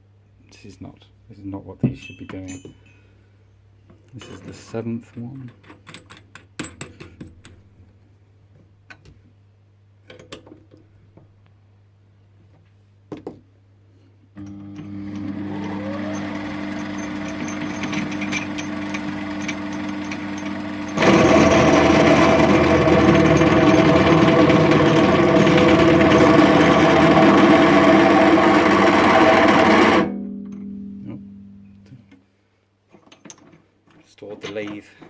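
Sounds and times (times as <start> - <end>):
drill bit grinding into steel: 14.4 - 30.1
lathe motor humming: 14.5 - 30.1.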